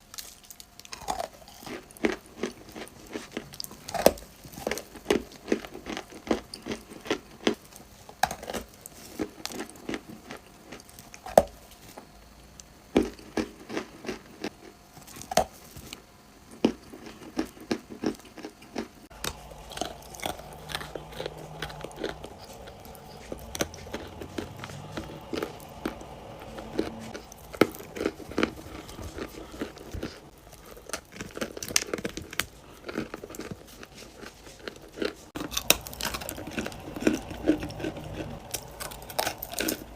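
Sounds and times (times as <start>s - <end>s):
quiet chewing and crumbling: 0.0s - 39.9s
clay crunching when bitten: 16.6s - 39.9s.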